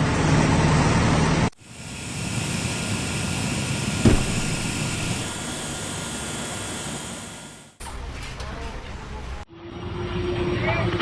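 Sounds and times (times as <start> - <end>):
heavy machinery running: 4.0 - 6.4
single knock: 4.1 - 5.7.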